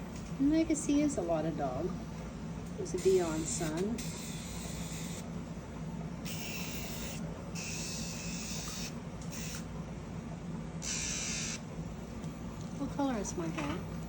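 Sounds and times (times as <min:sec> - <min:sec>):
electric nail grinder grinding: 0:03.0 - 0:05.2, 0:06.3 - 0:09.7, 0:10.8 - 0:11.6.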